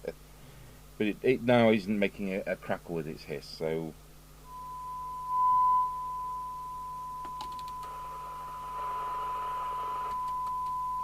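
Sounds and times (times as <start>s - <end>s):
receiver hiss: 2.4s - 11.0s
single-pitch test tone: 4.4s - 11.0s.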